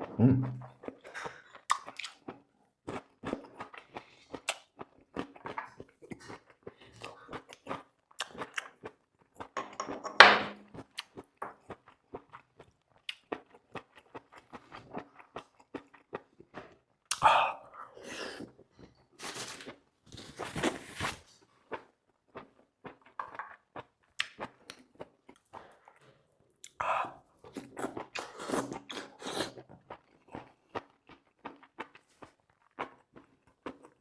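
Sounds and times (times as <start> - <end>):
close chewing and biting: 0.6 - 9.6.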